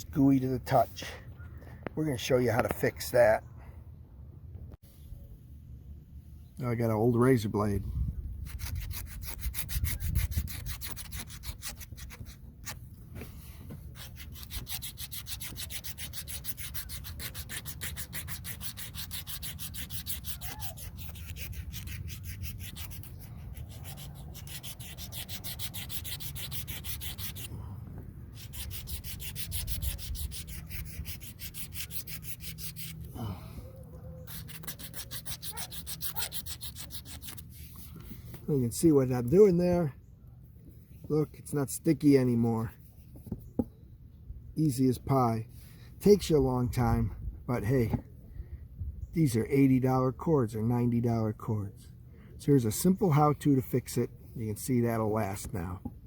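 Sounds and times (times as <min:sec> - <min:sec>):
razor blade scraping cord: 0:08.4 - 0:12.8, 0:13.9 - 0:27.6, 0:28.3 - 0:33.1, 0:34.2 - 0:38.0.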